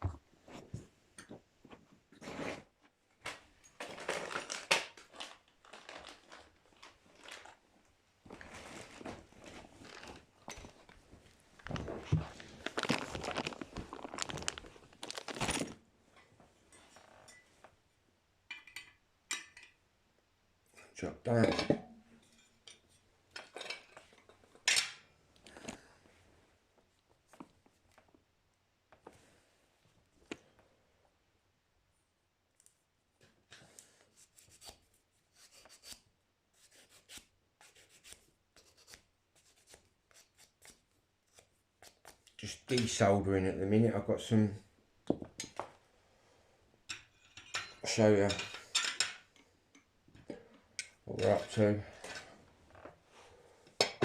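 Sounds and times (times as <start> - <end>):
metal tools clattering: 21.4 - 25.0, 46.9 - 49.3.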